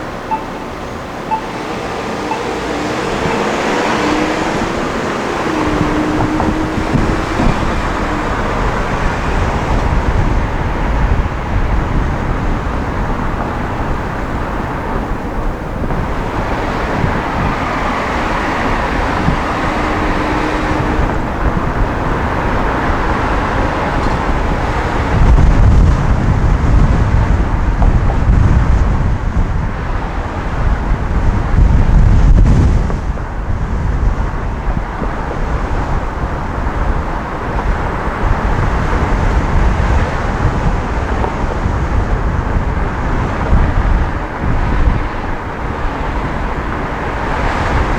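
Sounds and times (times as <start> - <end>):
air and tyre road noise: 0.0 - 47.9
wind buffeting microphone: 0.0 - 47.9.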